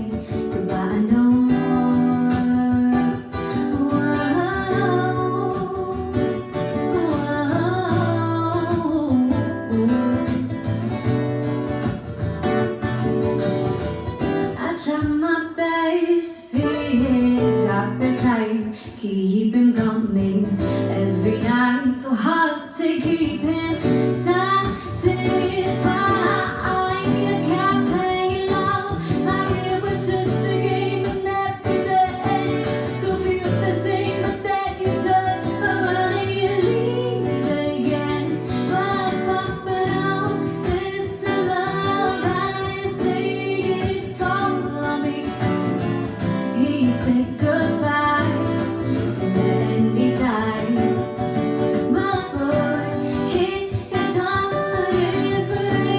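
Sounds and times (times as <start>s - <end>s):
woman singing: 0.0s - 11.8s, 13.7s - 55.9s
guitar accompaniment: 0.0s - 55.9s.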